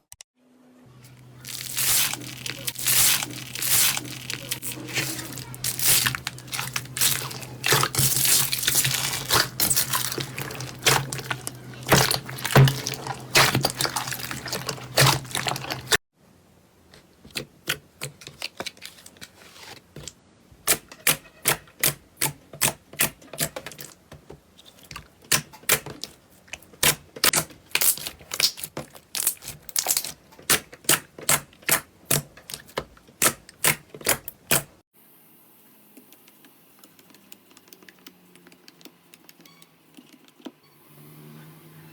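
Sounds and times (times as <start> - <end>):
slime crackling and popping: 1.4 - 16.0, 26.8 - 34.6.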